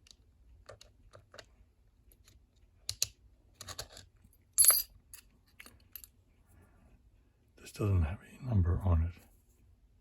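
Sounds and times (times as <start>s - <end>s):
small metal parts clinking: 3.6s - 6.2s.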